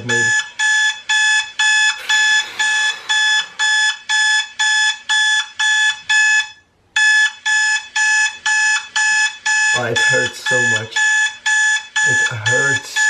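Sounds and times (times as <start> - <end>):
alarm clock beeping: 0.0 - 13.0.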